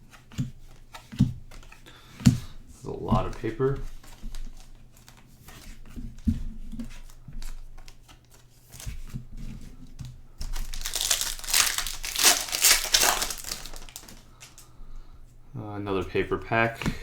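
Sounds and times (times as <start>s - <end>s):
cards clicking and rustling: 3.1s - 6.2s, 10.4s - 14.7s
wrapper crinkling and tearing: 10.4s - 14.6s.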